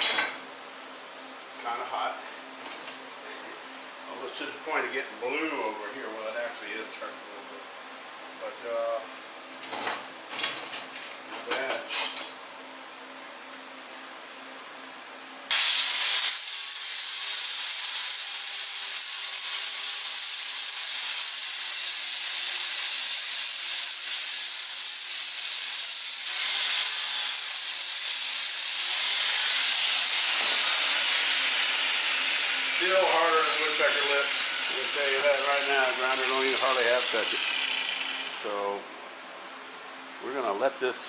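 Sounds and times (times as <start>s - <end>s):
angle grinder grinding steel: 15.5s - 38.6s.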